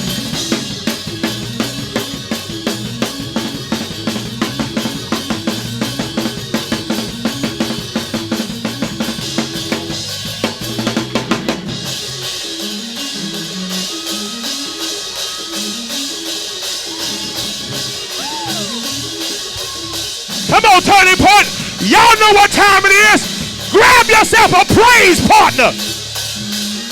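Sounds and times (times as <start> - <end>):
live band playing fast music: 0.0 - 26.9
stepping bass line: 20.4 - 25.8
bass drum and snare: 20.4 - 25.9.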